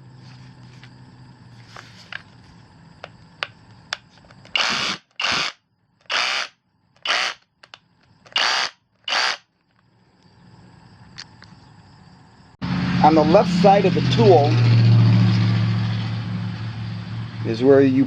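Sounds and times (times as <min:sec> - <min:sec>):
sharp clicks: 0:03.0 - 0:09.4
rotary hammer running: 0:04.5 - 0:09.4.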